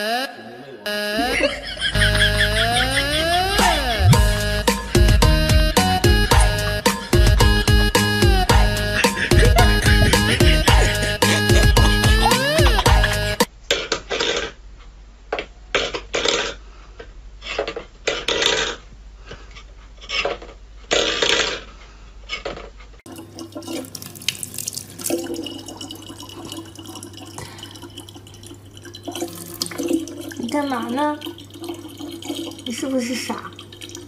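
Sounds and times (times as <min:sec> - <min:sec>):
steady low hum: 0:01.2 - 0:13.5
faint running water: 0:23.1 - 0:34.0
water splashing: 0:23.1 - 0:34.0.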